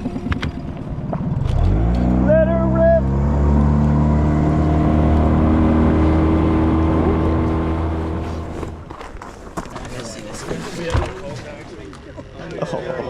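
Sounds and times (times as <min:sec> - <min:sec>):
outboard motor at full throttle: 0:00.0 - 0:09.0.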